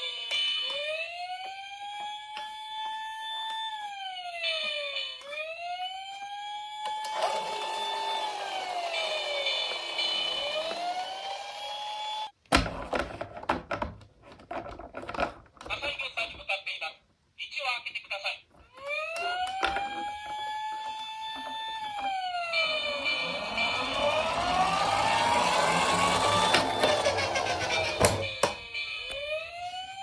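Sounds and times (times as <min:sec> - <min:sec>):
toy siren wailing: 0:00.0 - 0:12.3, 0:18.7 - 0:30.0
higher warbling tone: 0:21.9 - 0:28.4.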